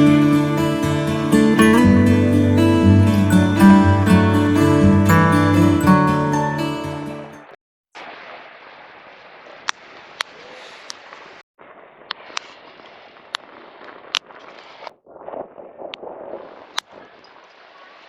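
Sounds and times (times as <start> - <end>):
campfire crackling and popping: 10.9 - 17.9.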